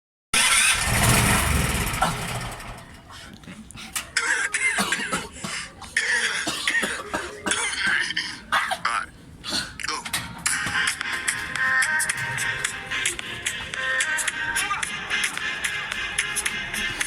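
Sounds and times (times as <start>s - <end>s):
person coughing and clearing throat: 4.3s - 9.8s.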